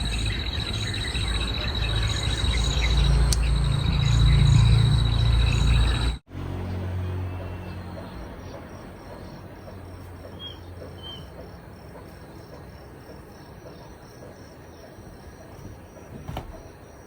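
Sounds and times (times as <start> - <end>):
insects chirping: 0.0 - 6.2, 7.4 - 17.0.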